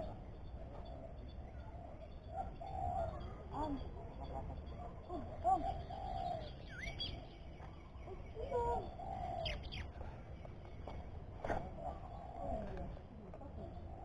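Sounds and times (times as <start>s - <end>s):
bird calling with whistled notes: 5.0s - 10.0s.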